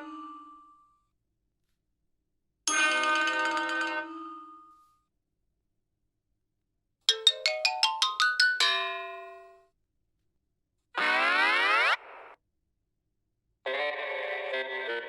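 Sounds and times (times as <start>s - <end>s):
rising xylophone-like notes: 7.1s - 8.6s.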